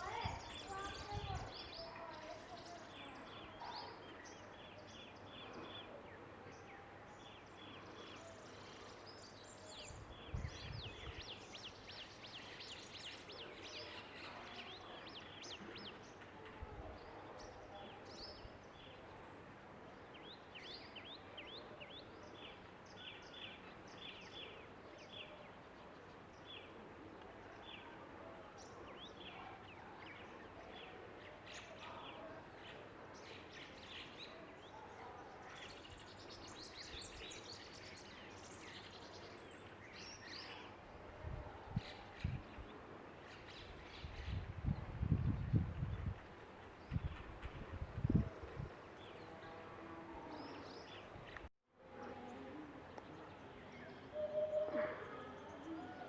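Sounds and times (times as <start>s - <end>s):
small birds chirping: 0.0s - 16.4s.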